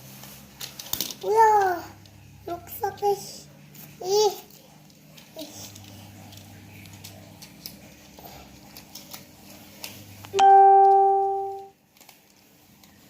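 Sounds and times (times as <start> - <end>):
electronic tone: 10.4 - 11.7.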